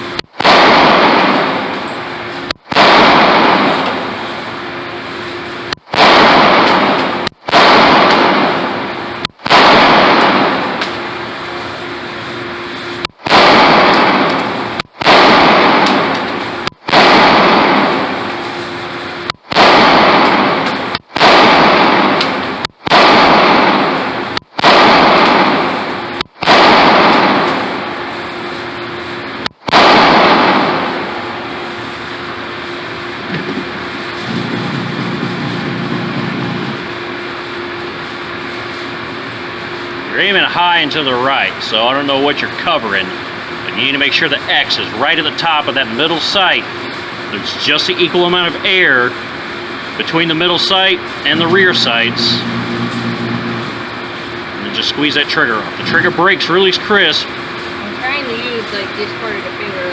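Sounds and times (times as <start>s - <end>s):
pistol shots ringing indoors: 0.4s - 1.9s, 2.7s - 4.2s, 5.9s - 11.2s, 13.2s - 18.8s, 19.5s - 28.8s, 29.6s - 31.6s.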